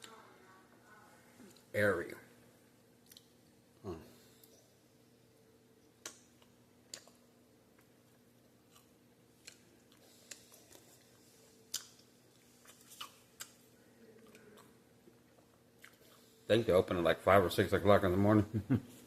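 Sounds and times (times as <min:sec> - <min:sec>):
faint electrical hum: 0:00.0 - 0:19.0
chewing mouth clicks and smacks: 0:03.0 - 0:03.4, 0:06.0 - 0:13.6.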